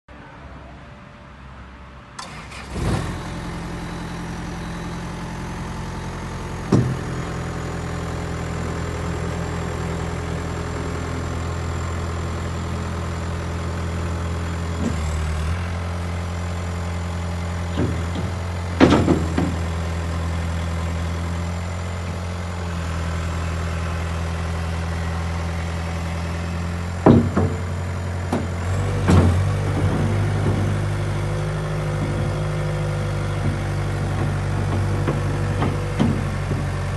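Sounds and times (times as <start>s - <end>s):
diesel engine idling: 2.2s - 36.9s
sharp clunks: 6.5s - 7.4s, 17.6s - 19.9s, 27.0s - 36.9s.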